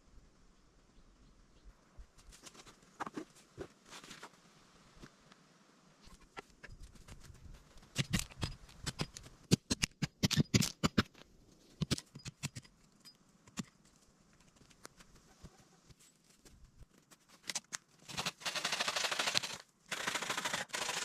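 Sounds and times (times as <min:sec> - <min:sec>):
sharp clicks and snaps: 0:07.9 - 0:11.2.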